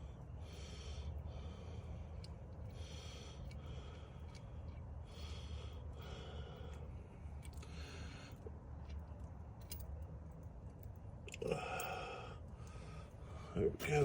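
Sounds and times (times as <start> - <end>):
low steady hum: 0.0 - 14.0
person breathing: 11.5 - 13.6.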